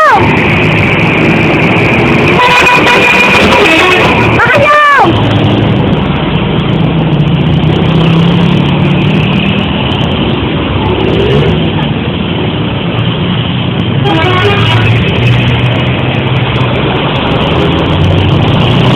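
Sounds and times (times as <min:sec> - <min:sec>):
bus engine running: 0:00.0 - 0:18.9
road noise: 0:00.0 - 0:18.9
multi-tone bus horn: 0:02.3 - 0:04.9, 0:14.0 - 0:15.3.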